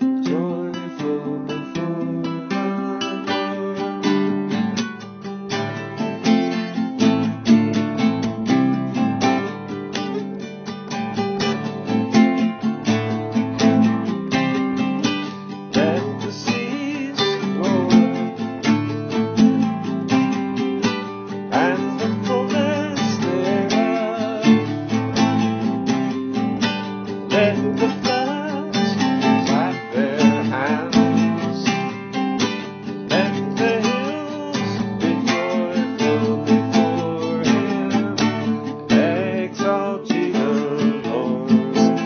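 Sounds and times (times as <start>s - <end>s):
acoustic guitar strumming: 0.0s - 42.0s.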